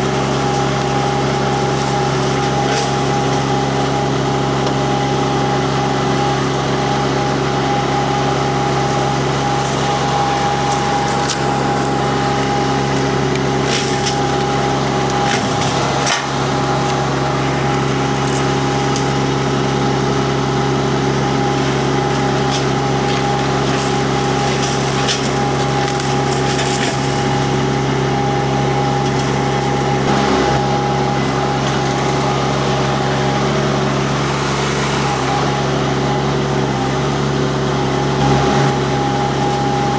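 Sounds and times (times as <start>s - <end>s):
diesel engine running: 0.0s - 39.9s
wood cracking and splintering: 0.2s - 3.7s, 8.7s - 32.8s.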